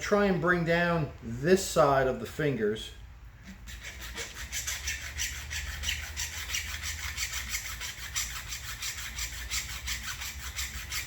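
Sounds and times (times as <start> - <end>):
hand file rasping on steel: 3.5 - 11.0.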